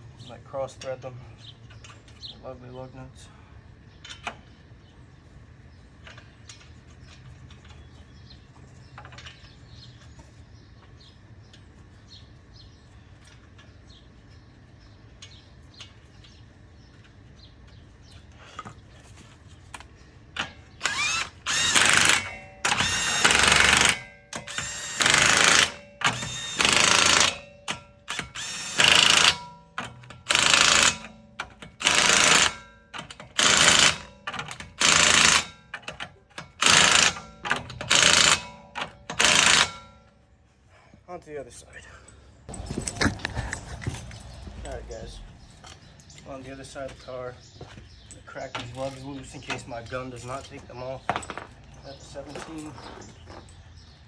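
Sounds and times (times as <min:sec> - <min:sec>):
impact wrench hammering: 0:20.4 - 0:40.2.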